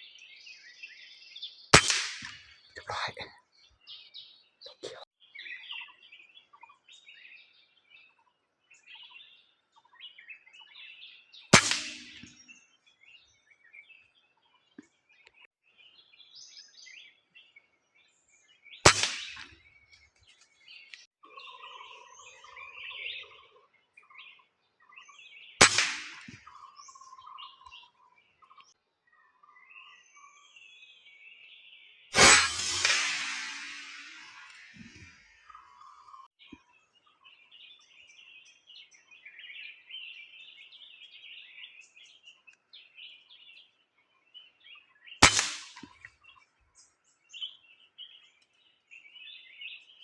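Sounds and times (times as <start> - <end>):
small birds chirping: 0.0 - 50.0
air rifle shot: 1.8 - 2.5, 11.6 - 12.4, 18.9 - 19.6, 25.6 - 26.4, 32.2 - 35.1, 45.2 - 46.0.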